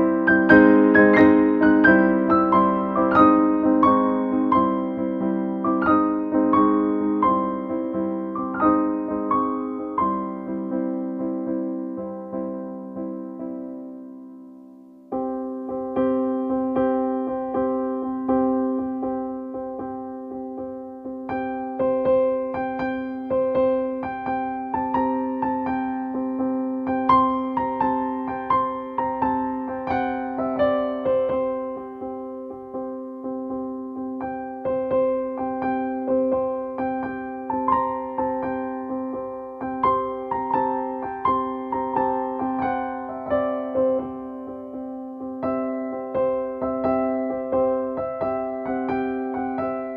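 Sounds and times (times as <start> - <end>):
electric piano music: 0.0 - 49.9.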